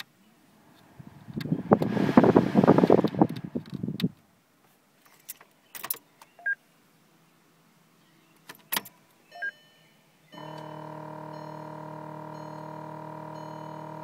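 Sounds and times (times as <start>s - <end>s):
droning hum: 10.4s - 14.0s.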